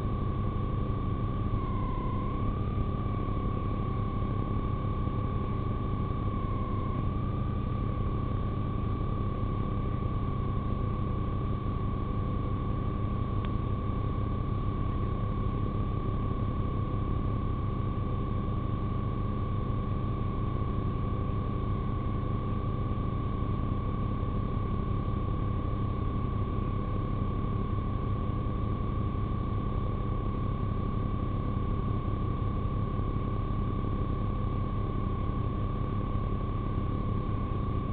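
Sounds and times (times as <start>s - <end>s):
steady high-pitched tone: 1.4s - 4.0s.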